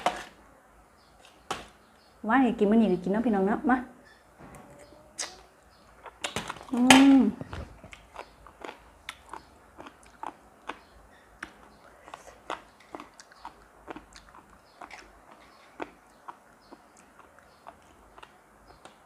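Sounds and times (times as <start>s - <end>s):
person chewing and crunching: 7.6s - 19.0s.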